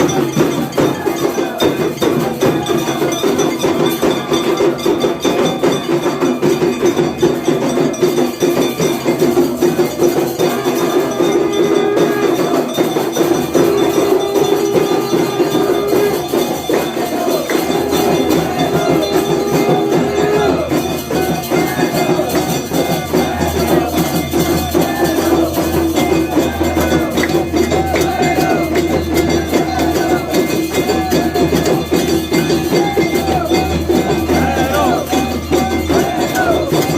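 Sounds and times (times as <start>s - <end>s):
bells cymbals and drums: 0.0s - 36.9s
long held notes: 13.5s - 16.7s.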